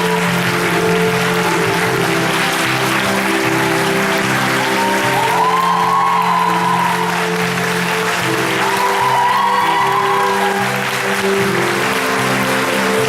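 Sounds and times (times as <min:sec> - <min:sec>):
audience applause: 0:00.0 - 0:13.0
curtain call music: 0:00.0 - 0:13.0.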